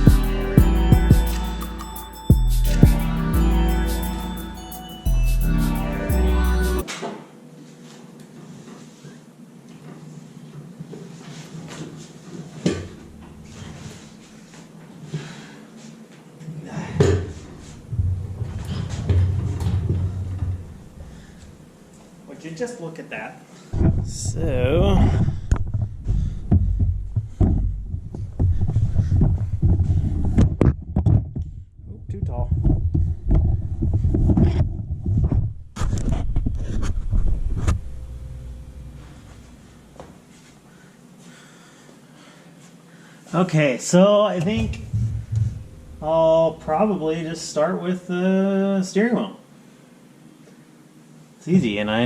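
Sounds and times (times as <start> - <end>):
objects knocking and clunking: 17.0 - 20.8, 25.1 - 31.5
low rumble: 17.8 - 21.2, 23.8 - 30.3, 31.4 - 40.0, 44.6 - 47.5.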